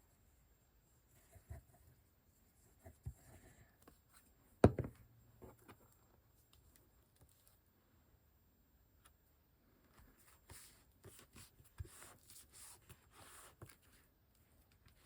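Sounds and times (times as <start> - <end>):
sharp knock on table: 4.6 - 5.0.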